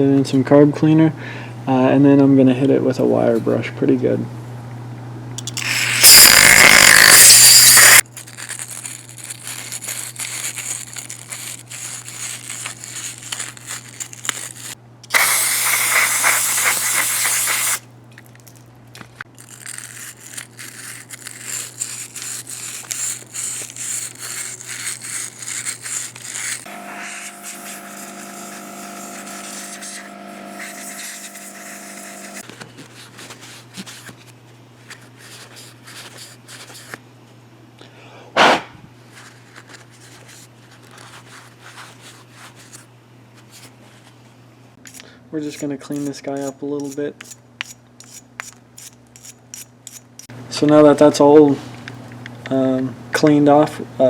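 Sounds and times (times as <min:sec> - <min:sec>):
steady multi-tone hum: 0:00.0 - 0:39.6
wire brush scrubbing: 0:05.6 - 0:17.8, 0:19.4 - 0:34.2, 0:44.9 - 0:50.3
aerosol spray hissing: 0:15.1 - 0:17.8, 0:26.4 - 0:32.4.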